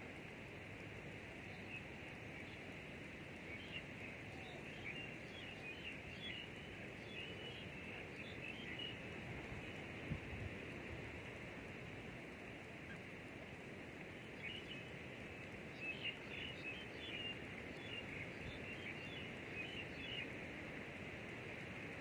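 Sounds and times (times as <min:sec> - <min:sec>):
faint outdoor hiss: 0:00.0 - 0:22.0
small bird chirping: 0:01.2 - 0:10.2, 0:14.1 - 0:20.6.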